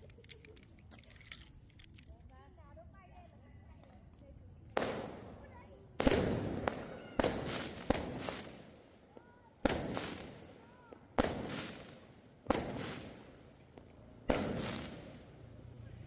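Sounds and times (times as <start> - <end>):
fireworks bangs: 4.8 - 15.8.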